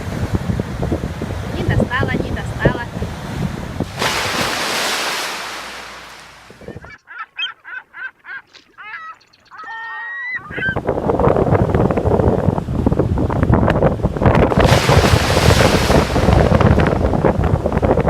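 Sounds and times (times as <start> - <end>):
wind: 0.0 - 18.0
surf hissing: 3.8 - 6.6, 14.5 - 17.4
bird calling: 6.8 - 10.8.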